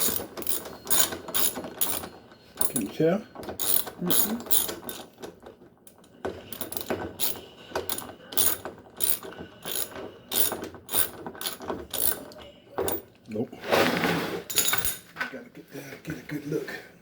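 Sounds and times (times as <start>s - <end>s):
ratchet wrench clicking: 0.0s - 2.0s, 3.6s - 5.0s, 6.5s - 12.2s.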